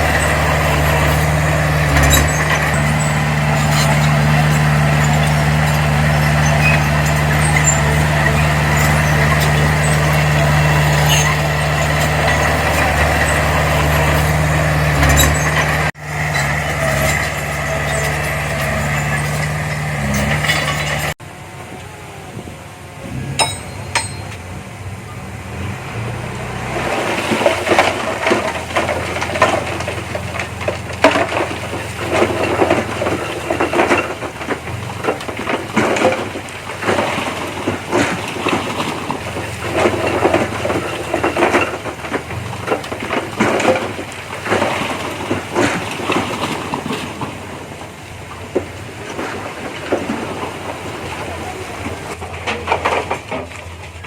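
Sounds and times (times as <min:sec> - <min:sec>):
bulldozer diesel engine running: 0:00.0 - 0:54.0
metallic clanks of tracks and blade: 0:23.3 - 0:24.5.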